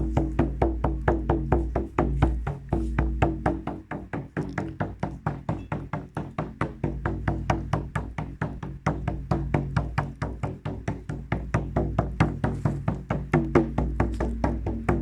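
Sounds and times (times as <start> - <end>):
drum beaten fast: 0.0 - 15.0.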